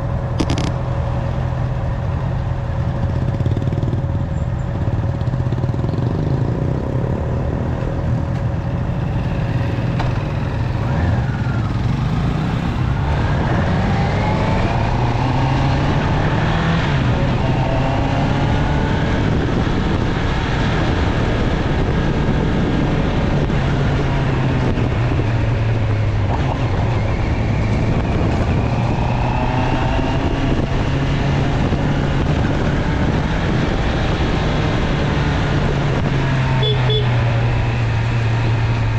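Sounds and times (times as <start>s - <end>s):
motorcycle engine running: 0.0s - 15.1s, 30.1s - 38.9s.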